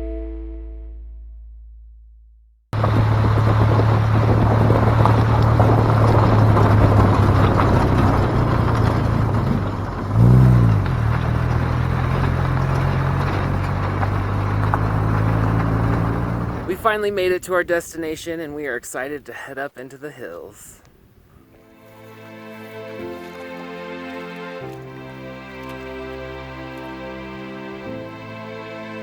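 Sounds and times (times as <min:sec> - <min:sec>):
background music: 0:00.0 - 0:01.6, 0:21.4 - 0:29.0
brief sound rising and falling in pitch: 0:00.0 - 0:01.8
car engine hum: 0:02.8 - 0:17.4, 0:21.6 - 0:29.0
road noise: 0:02.8 - 0:29.0.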